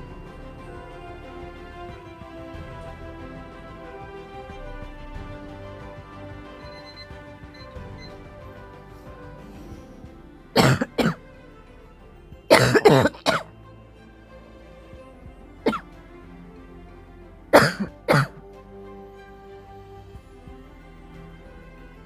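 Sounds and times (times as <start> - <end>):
quiet background music: 0.0 - 22.0
person coughing: 10.6 - 11.2, 12.5 - 13.5, 17.6 - 18.4.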